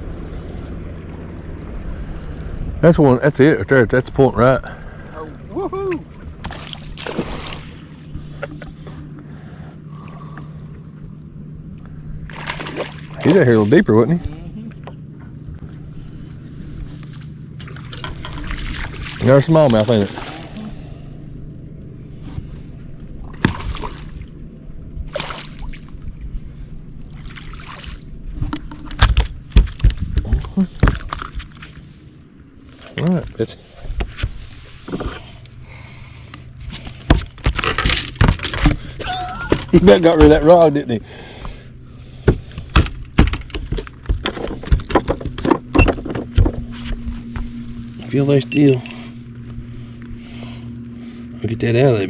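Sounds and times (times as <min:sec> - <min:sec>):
boat engine hum: 0:00.0 - 0:52.0
fishing tackle knocking and rattling: 0:42.3 - 0:46.7.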